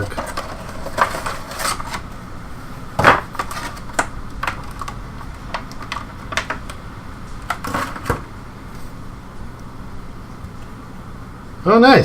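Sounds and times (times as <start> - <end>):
packaging clicks and taps: 3.4 - 6.8.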